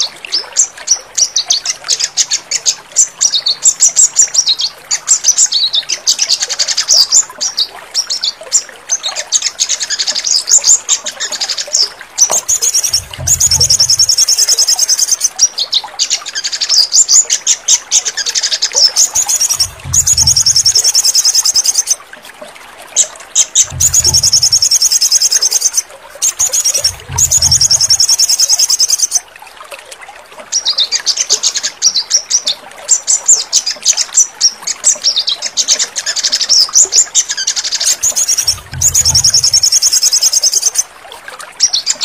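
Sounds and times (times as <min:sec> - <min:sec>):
songbird chirping and trilling: 0:00.0 - 0:22.0, 0:23.0 - 0:29.2, 0:30.5 - 0:40.9
low hum: 0:12.4 - 0:14.2, 0:19.2 - 0:21.0, 0:23.6 - 0:24.8, 0:26.2 - 0:28.0.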